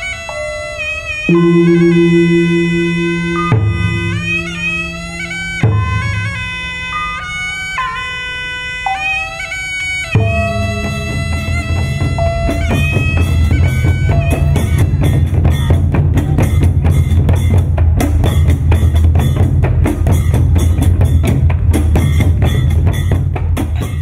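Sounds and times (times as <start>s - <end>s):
reedy wind instrument melody: 0.0s - 15.8s
drums beating fast rhythm: 1.3s - 6.5s, 10.2s - 24.0s
low drone: 1.3s - 6.6s.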